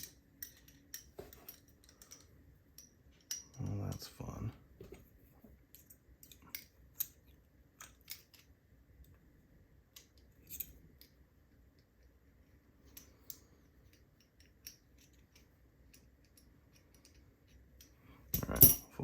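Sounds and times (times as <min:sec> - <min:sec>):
small metallic clicks and taps: 0:12.9 - 0:18.8.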